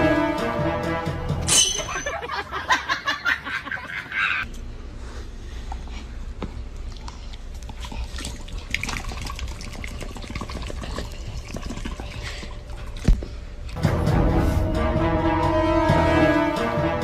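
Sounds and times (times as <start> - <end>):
small irregular clicks and drips: 6.7 - 13.2.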